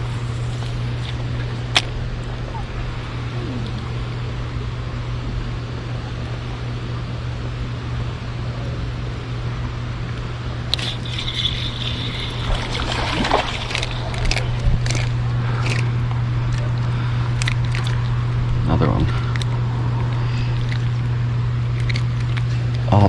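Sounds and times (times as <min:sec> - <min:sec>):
low hum: 0:00.0 - 0:23.0
sharp clicks and scraping: 0:10.7 - 0:16.7
river water running: 0:10.7 - 0:18.5.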